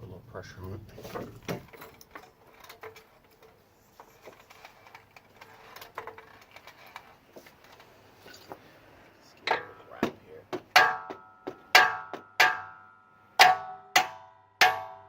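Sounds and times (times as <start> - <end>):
hammer striking steel: 10.6 - 15.0.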